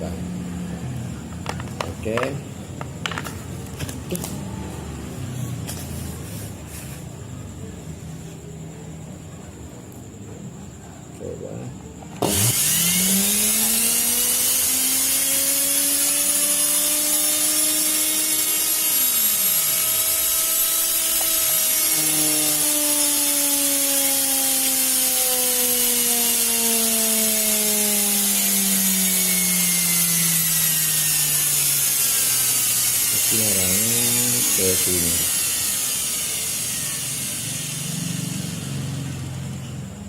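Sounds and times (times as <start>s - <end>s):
electric motor whining: 12.2s - 39.7s.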